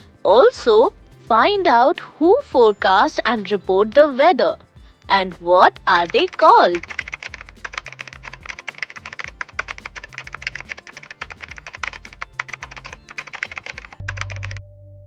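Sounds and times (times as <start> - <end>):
light rapid clicks: 5.6 - 14.6.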